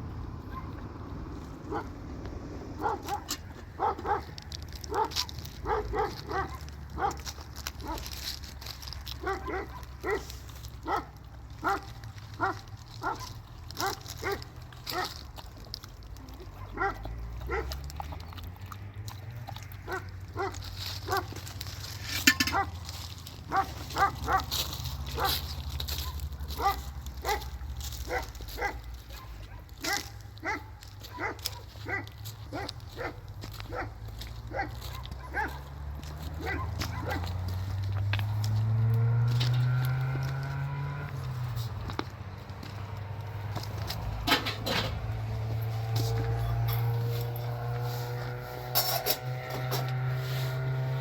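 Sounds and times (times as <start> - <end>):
dog barking: 0.5 - 0.8, 1.6 - 2.0, 2.8 - 8.1, 9.2 - 15.2, 16.5 - 17.8, 19.8 - 21.4, 22.3 - 22.8, 23.5 - 37.7.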